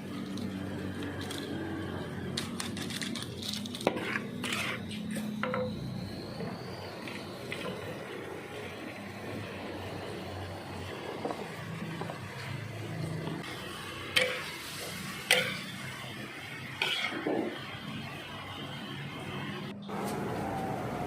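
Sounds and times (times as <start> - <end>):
metal utensils clinking on pots: 14.2 - 14.5, 15.2 - 15.8.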